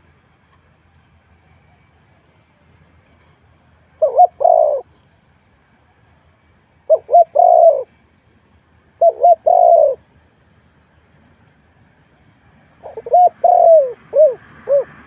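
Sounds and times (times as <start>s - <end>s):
dove cooing: 4.0s - 4.9s, 6.9s - 7.9s, 9.0s - 10.0s, 12.8s - 15.0s.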